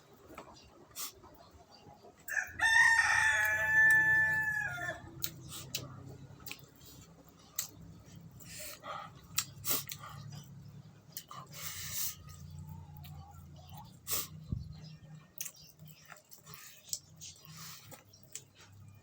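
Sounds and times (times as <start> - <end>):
rooster crowing: 2.3 - 5.1
eating clicks and smacks: 5.2 - 10.5, 15.3 - 18.8.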